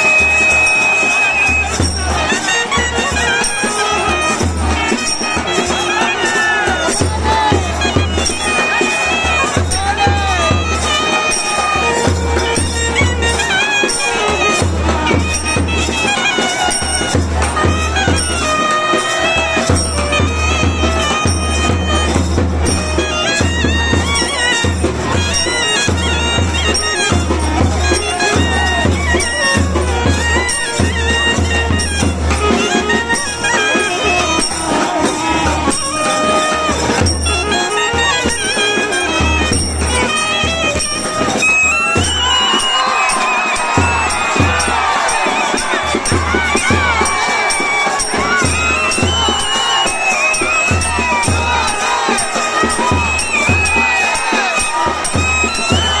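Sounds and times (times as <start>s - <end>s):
double-reed wind instrument melody: 0.0s - 56.0s.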